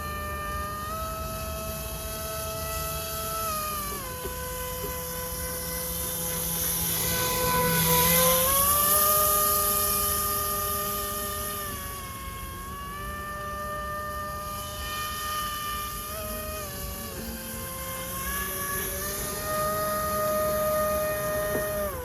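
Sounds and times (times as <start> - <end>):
electric motor propeller whine: 0.0 - 22.0.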